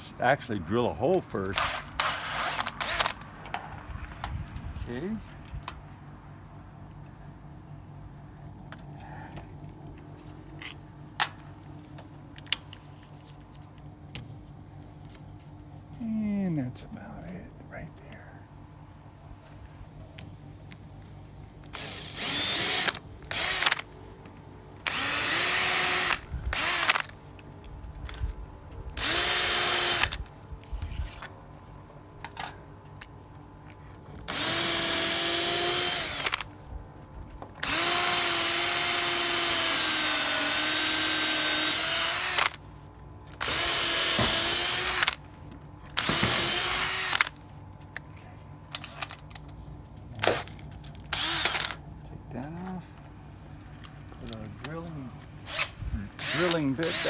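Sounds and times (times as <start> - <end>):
electric drill drilling into wood: 1.6 - 3.2, 21.8 - 23.8, 24.9 - 27.1, 29.0 - 30.2, 34.3 - 36.5, 37.6 - 42.6, 43.4 - 45.2, 46.0 - 47.3, 51.1 - 51.8, 55.5 - 57.0.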